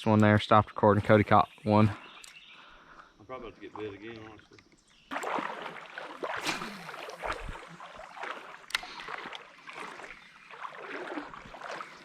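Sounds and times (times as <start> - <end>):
water splashing from wading: 3.7 - 12.0.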